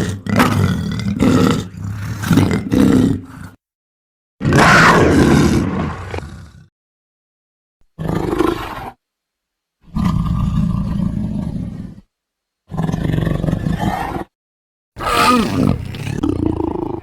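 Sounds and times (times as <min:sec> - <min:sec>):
creature roars: 0:04.4 - 0:06.7, 0:15.0 - 0:17.0.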